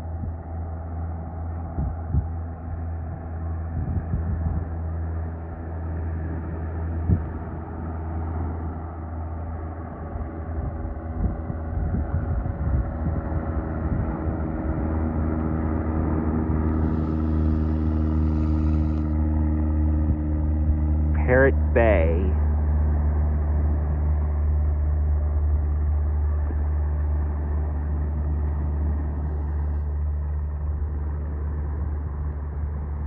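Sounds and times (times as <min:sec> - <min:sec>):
propeller plane engine droning: 0:00.0 - 0:33.0
wind buffeting microphone: 0:01.6 - 0:04.9, 0:06.9 - 0:08.0, 0:09.9 - 0:19.0.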